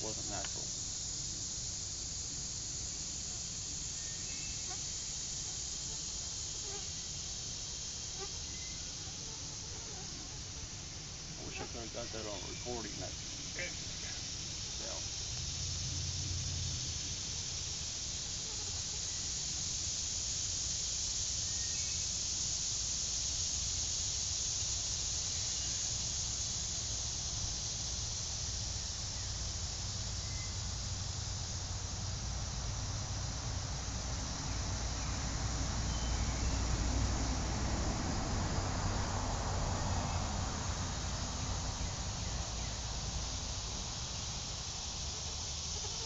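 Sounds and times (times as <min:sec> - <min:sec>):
high-pitched insect drone: 0:00.0 - 0:46.0
low rumble of road traffic: 0:00.0 - 0:46.0.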